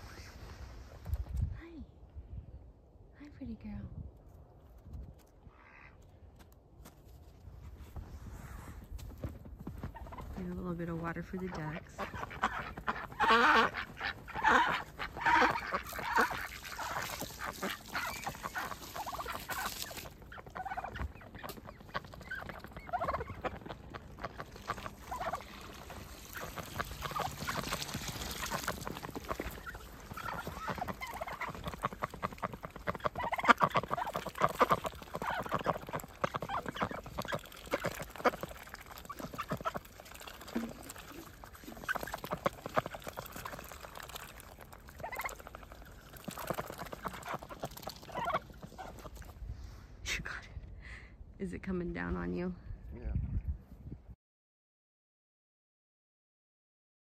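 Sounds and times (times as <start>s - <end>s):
ducks quacking: 10.0s - 44.3s, 44.9s - 49.3s.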